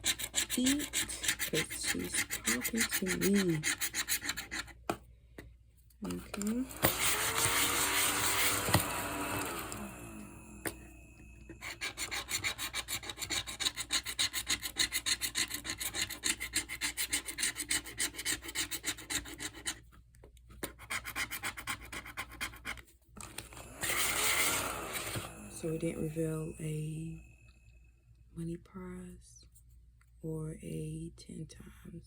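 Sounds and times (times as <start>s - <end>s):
scratching lottery ticket: 0.0s - 4.8s, 11.6s - 19.9s.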